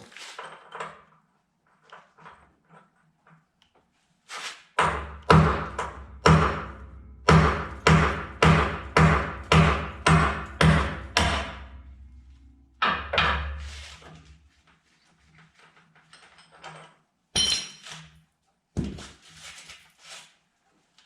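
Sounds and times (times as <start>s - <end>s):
hammer striking bolt: 4.8s - 11.9s
ringing metallic clank: 17.4s - 17.9s.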